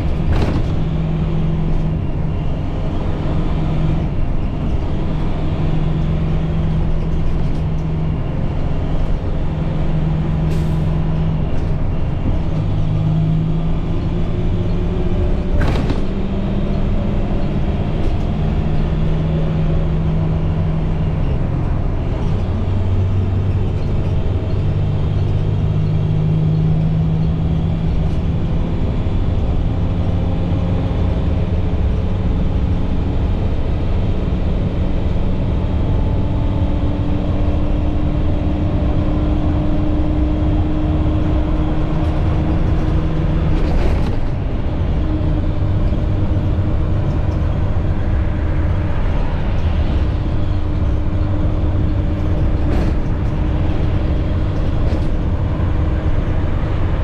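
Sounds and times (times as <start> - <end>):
diesel bus engine hum: 0.0 - 57.0.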